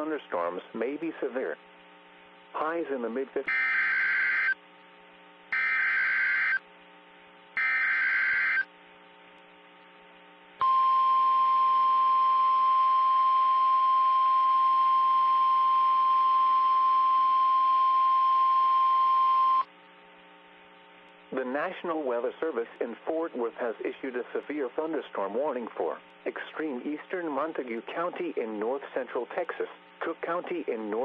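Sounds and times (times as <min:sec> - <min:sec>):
screeching data tones: 0:03.5 - 0:04.6, 0:05.5 - 0:06.6, 0:07.6 - 0:08.7
steady single-pitch alarm tone: 0:03.5 - 0:04.6, 0:05.5 - 0:06.6, 0:07.6 - 0:08.7, 0:10.6 - 0:19.7.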